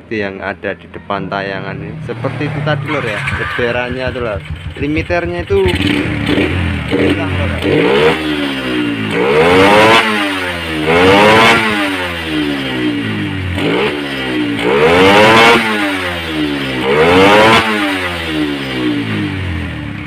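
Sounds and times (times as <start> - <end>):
motorcycle engine revving: 0.6 - 20.0.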